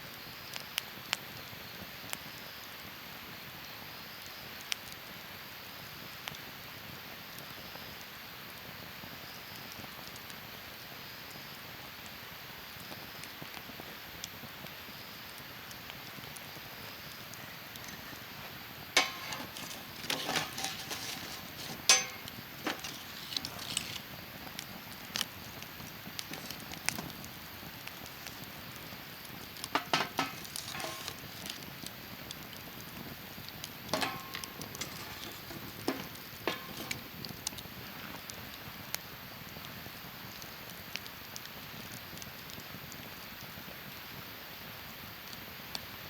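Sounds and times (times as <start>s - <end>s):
soft fire hiss: 0.3s - 45.5s
campfire crackling and popping: 12.8s - 43.7s.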